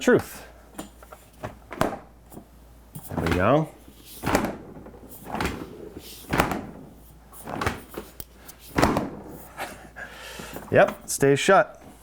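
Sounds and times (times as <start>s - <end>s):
refrigerator door thudding shut: 1.6s - 2.2s, 3.1s - 8.1s, 8.7s - 9.8s.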